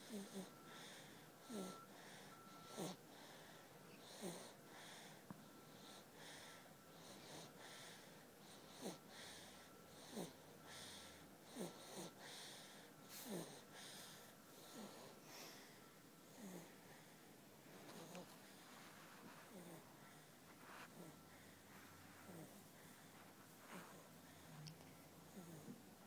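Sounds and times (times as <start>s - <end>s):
baby snoring with squeaks: 0.0s - 0.6s, 1.4s - 1.9s, 2.7s - 3.0s, 3.9s - 4.6s, 8.5s - 9.1s, 9.9s - 10.4s, 11.4s - 12.3s, 13.1s - 15.1s, 25.3s - 25.8s.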